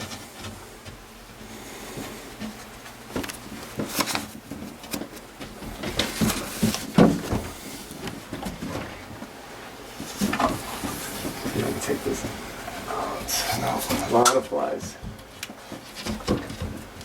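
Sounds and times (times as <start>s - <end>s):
wooden knocks and clunks: 5.0s - 7.6s, 16.0s - 17.0s.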